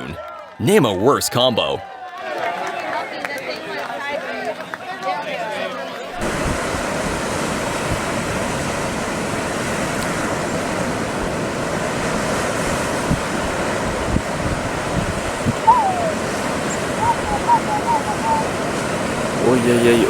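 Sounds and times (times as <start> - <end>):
wind: 0.0 - 20.0
wind buffeting microphone: 6.2 - 19.6
waves rushing: 6.2 - 20.0.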